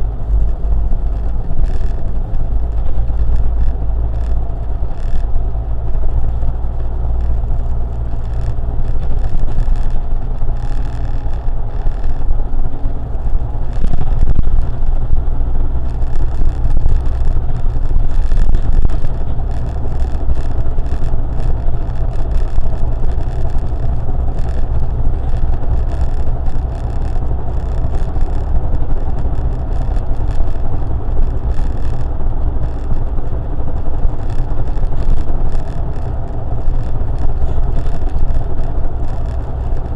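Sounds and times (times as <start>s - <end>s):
car engine and tyre rumble: 0.0s - 39.9s.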